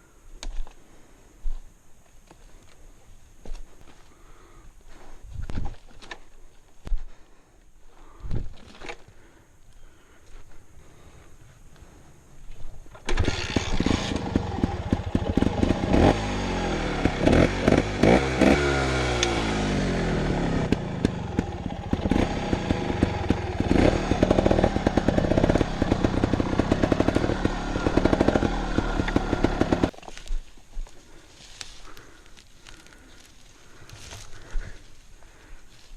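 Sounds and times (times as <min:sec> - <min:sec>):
motorcycle engine revving: 0:13.1 - 0:29.9.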